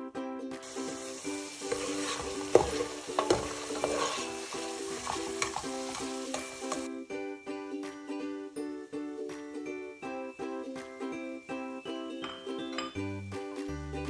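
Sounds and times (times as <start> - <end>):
food sizzling in hot oil: 0.6 - 6.9
utensil knocking against pan: 1.7 - 6.9.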